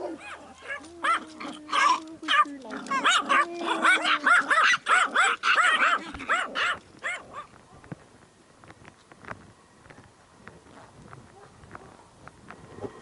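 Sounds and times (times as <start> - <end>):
dogs barking and yapping: 0.0 - 7.6, 11.3 - 12.1.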